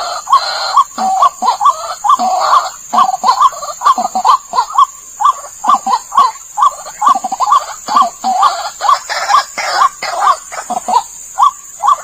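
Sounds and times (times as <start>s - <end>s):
waterhen calling: 0.0s - 12.0s.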